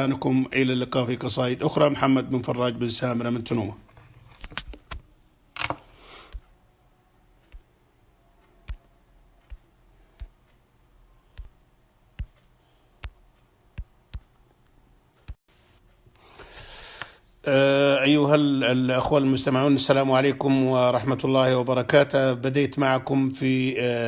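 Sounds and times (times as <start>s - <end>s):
sharp isolated clicks: 8.4s - 10.6s, 11.2s - 15.4s.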